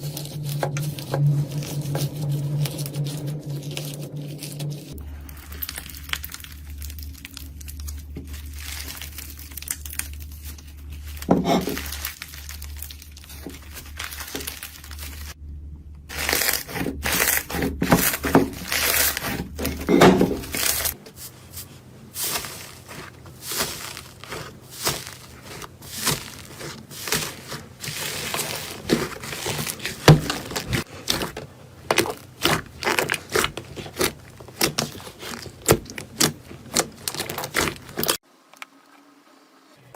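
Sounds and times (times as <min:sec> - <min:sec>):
slime crackling and popping: 0:00.0 - 0:15.4, 0:16.1 - 0:21.0, 0:22.2 - 0:38.2
low hum: 0:00.0 - 0:21.1.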